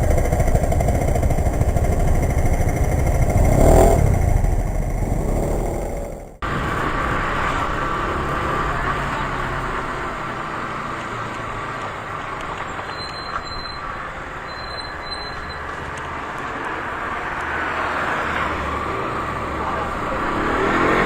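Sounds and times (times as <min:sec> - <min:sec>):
motorcycle engine running: 0:00.0 - 0:11.8.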